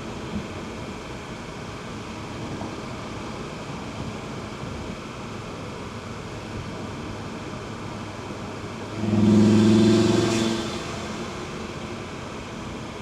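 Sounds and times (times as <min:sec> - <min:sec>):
road and wind noise: 0:00.0 - 0:13.0
car engine low hum: 0:06.8 - 0:13.0.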